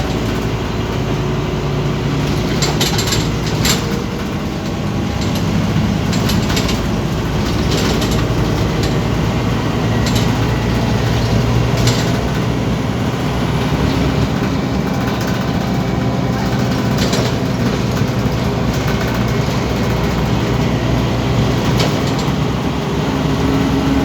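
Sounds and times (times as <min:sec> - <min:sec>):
bus engine running: 0:00.0 - 0:24.0
short clicks or rattles: 0:02.3 - 0:12.5.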